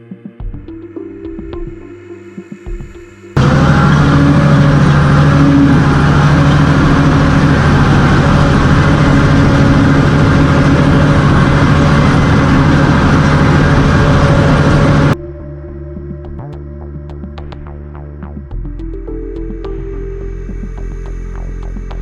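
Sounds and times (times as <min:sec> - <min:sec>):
bulldozer diesel engine running: 0:03.4 - 0:15.2.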